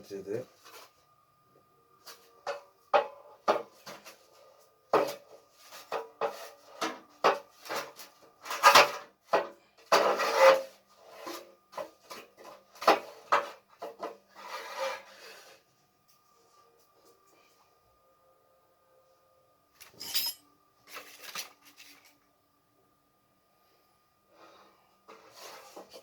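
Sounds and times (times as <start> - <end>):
scrapes and knocks on stove parts: 2.1 - 15.2
long rasping scrapes: 9.9 - 11.5, 14.3 - 15.6, 25.1 - 26.0.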